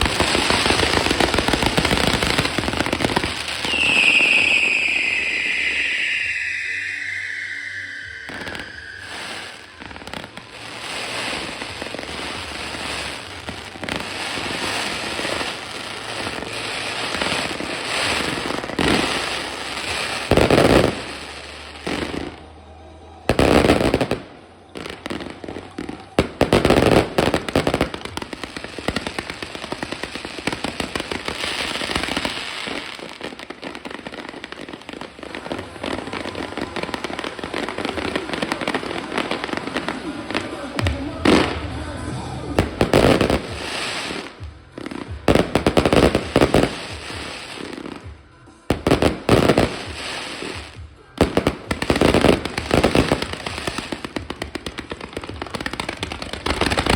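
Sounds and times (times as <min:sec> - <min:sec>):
loud firework bangs: 0:00.0 - 0:22.3, 0:24.8 - 0:47.9
fireworks crackling: 0:00.0 - 0:56.9.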